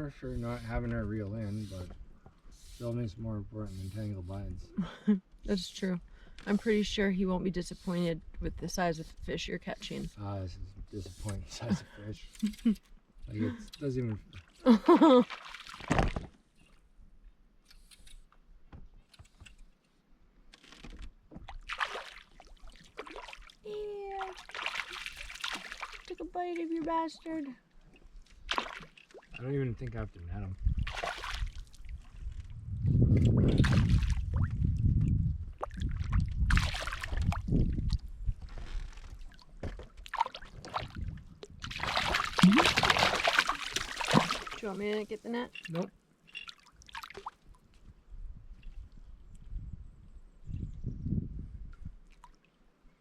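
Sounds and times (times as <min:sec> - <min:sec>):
water splashing beside a boat: 0:14.3 - 0:16.8, 0:20.7 - 0:29.5, 0:30.8 - 0:32.4, 0:35.5 - 0:47.8
water sloshing against boat: 0:35.5 - 0:47.8.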